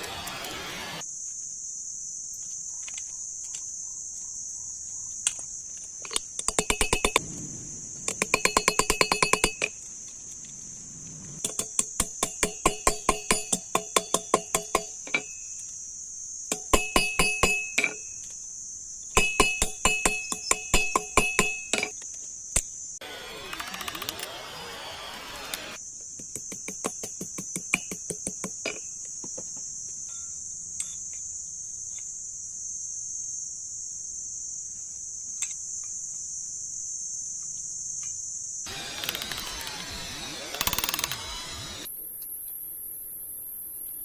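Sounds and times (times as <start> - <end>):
steady high hiss: 6.8 - 18.9
hammer striking steel on anvil: 11.4 - 15.4, 16.5 - 18.0, 19.2 - 21.9.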